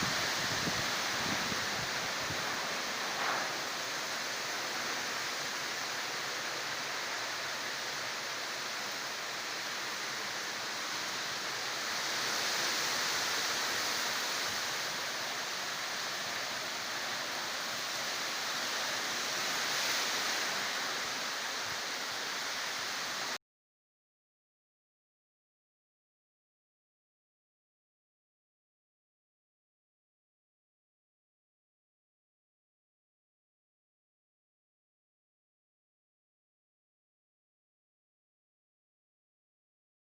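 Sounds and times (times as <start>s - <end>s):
storm wind: 0.0s - 23.1s
rain: 0.0s - 23.4s.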